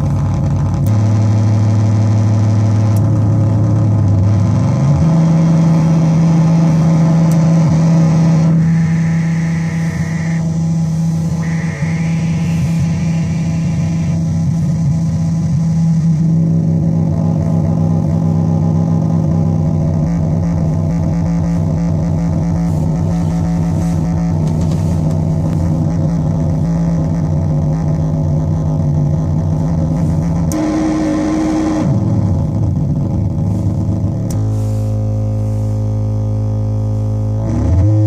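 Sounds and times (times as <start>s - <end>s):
synthesizer buzzing drone: 0.0s - 38.0s
synthesizer tone sliding downward: 6.2s - 27.0s.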